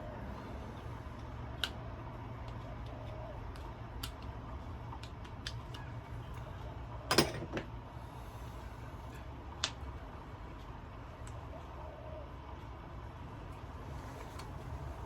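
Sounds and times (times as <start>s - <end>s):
steady low hum: 0.0s - 15.0s
light clicks of small parts: 1.2s - 6.6s, 9.6s - 10.0s, 10.6s - 11.4s.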